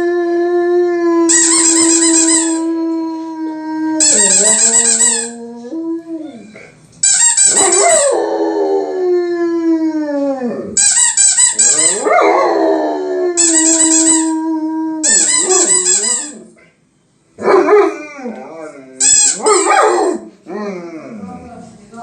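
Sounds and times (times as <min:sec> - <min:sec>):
squeaky toy squeaking: 0:01.3 - 0:02.7, 0:04.0 - 0:05.4, 0:07.0 - 0:08.0, 0:10.8 - 0:12.1, 0:13.4 - 0:14.4, 0:15.0 - 0:16.4, 0:19.0 - 0:19.7
dog howling: 0:07.5 - 0:10.8, 0:11.8 - 0:16.5.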